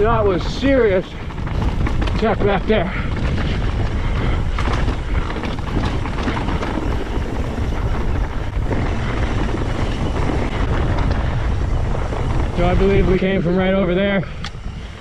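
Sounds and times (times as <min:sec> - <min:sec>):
faint clicks and rattles: 0:00.0 - 0:11.5
wind buffeting microphone: 0:00.0 - 0:15.0.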